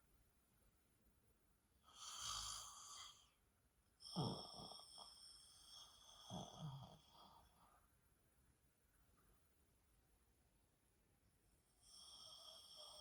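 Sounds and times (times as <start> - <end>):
woman snoring softly: 1.9 - 3.4, 4.0 - 7.6, 11.8 - 13.0.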